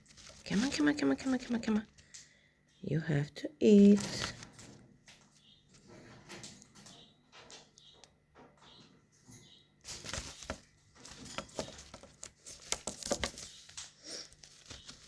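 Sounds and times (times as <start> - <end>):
bird rustling and fluttering: 0.0 - 2.4, 3.7 - 7.7, 9.8 - 15.0.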